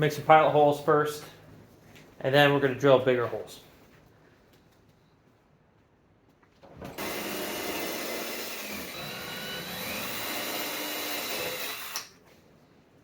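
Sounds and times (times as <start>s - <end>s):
electric drill boring: 7.0s - 12.1s.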